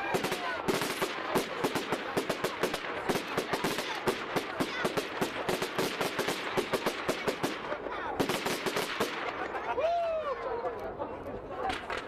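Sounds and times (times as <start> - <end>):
fireworks crackling bangs: 0.0 - 9.6.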